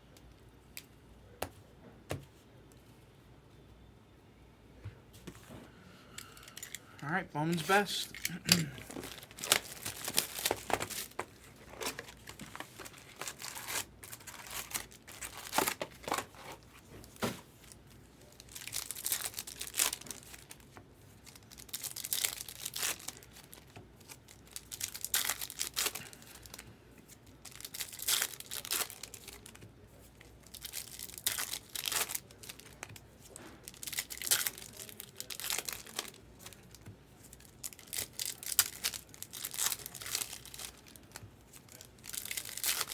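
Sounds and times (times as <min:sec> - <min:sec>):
card pack wrappers tearing and crinkling: 0:07.4 - 0:17.3, 0:18.2 - 0:29.6, 0:30.2 - 0:42.9.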